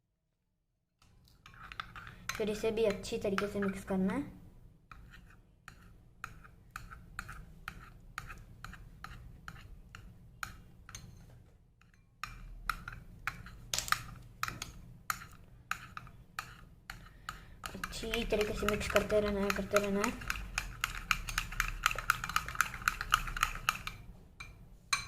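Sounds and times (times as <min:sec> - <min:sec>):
spoon tapping glass bowl: 0:17.3 - 0:25.0.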